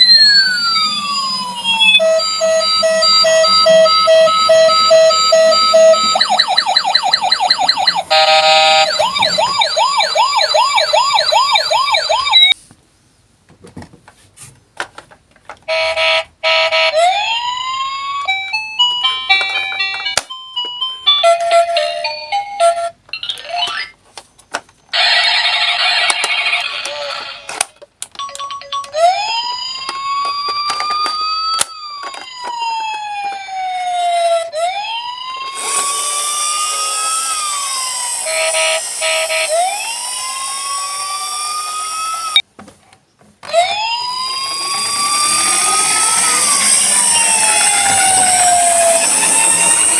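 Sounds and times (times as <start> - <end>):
toy ambulance electronic siren: 0.0 - 12.6, 15.7 - 22.9, 25.0 - 27.6, 28.2 - 42.4, 43.4 - 49.9
harsh buzz: 35.6 - 40.3
rising electronic sweep: 43.8 - 49.9.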